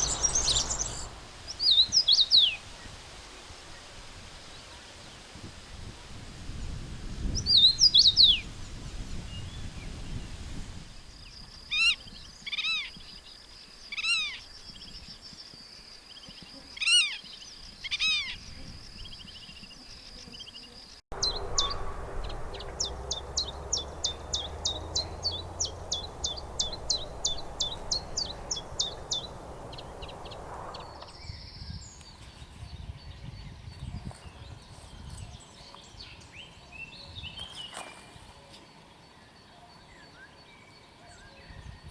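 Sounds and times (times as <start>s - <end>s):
fast high-pitched bird notes: 0.0s - 1.1s, 21.2s - 31.0s
loud down-slurred bird calls: 0.0s - 2.6s, 21.2s - 31.4s.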